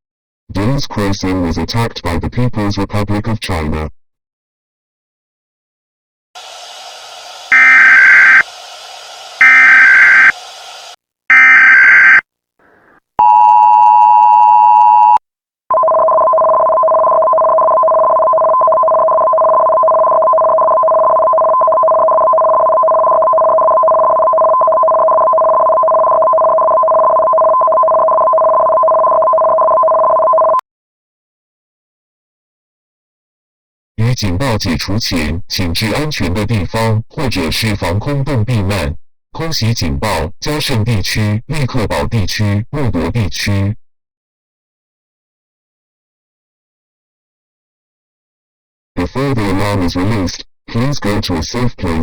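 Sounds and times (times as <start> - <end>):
buzzy data bursts: 7.5 - 8.4, 9.4 - 10.4
two-tone attention signal: 7.5 - 8.5, 9.4 - 10.4, 11.3 - 12.2.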